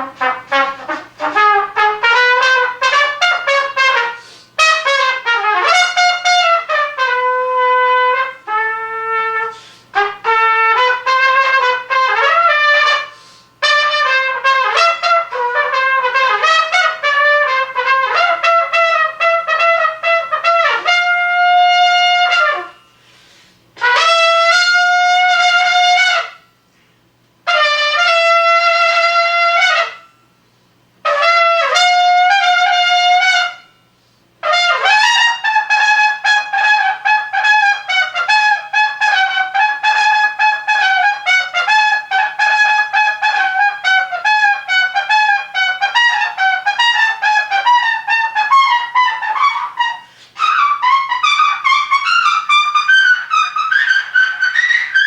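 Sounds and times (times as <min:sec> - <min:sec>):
solo wind instrument: 0:00.0 - 0:22.9, 0:34.4 - 0:55.0.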